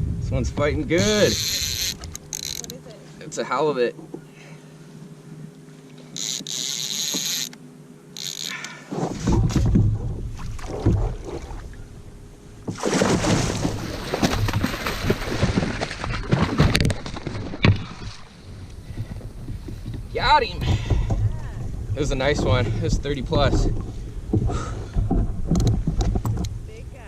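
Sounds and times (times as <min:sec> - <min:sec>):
wind rumbling on microphone: 0:00.0 - 0:02.7, 0:09.0 - 0:27.0
water splashing: 0:08.8 - 0:11.9, 0:12.5 - 0:18.7.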